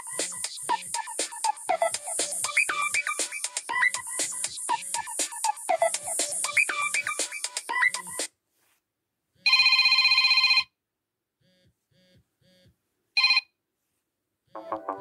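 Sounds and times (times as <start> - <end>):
telephone bell ringtone trilling: 9.4 - 10.7, 13.2 - 13.5
phone ringtone melody: 9.5 - 10.7, 13.2 - 13.5, 14.6 - 15.0.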